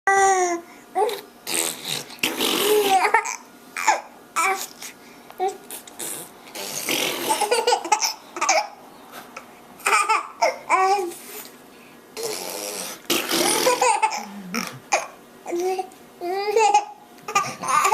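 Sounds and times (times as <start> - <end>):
blown fart sounds: 1.4 - 3.1, 6.0 - 7.7, 12.2 - 15.0
baby giggling: 6.8 - 8.7, 13.3 - 17.9.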